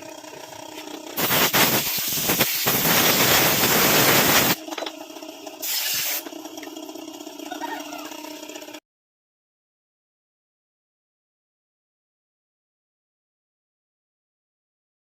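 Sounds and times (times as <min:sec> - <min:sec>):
loud spraying hiss: 0:01.2 - 0:04.6, 0:05.6 - 0:06.2.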